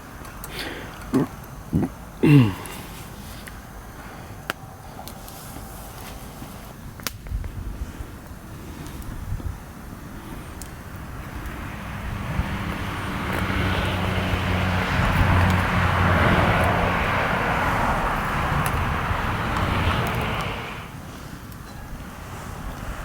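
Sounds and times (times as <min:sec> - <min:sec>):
vehicle passing by: 0:10.7 - 0:21.0.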